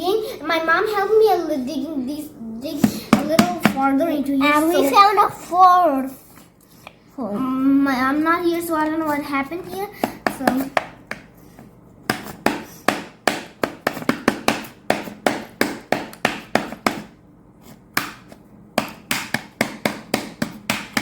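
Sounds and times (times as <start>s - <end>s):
digging tool tapping clay: 12.1s - 17.1s, 17.9s - 21.0s.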